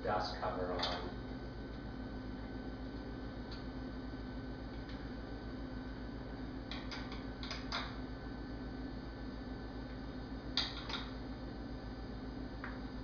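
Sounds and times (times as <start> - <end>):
steady electrical hum: 0.0 - 13.0.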